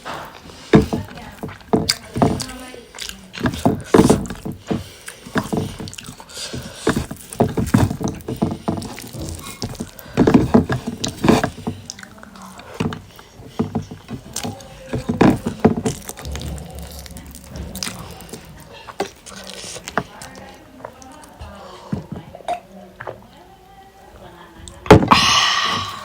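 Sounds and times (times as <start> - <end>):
chewing and mouth noises: 0.0 - 23.2.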